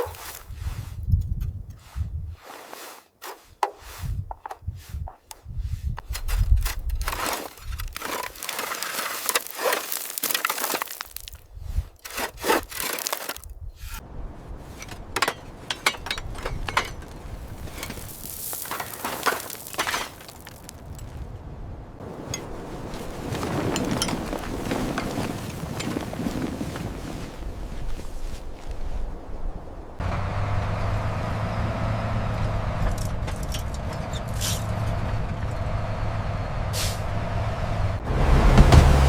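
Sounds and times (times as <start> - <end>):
rubbing and scraping: 0.0 - 21.2, 22.0 - 29.2, 38.0 - 39.0
scraping rusty metal parts: 6.0 - 11.3, 12.0 - 21.0.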